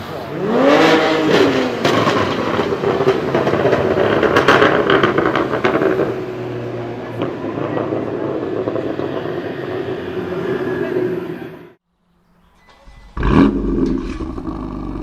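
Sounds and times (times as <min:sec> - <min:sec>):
car engine drone: 0:00.0 - 0:15.0
exhaust pops and crackles: 0:00.8 - 0:09.4, 0:13.1 - 0:15.0.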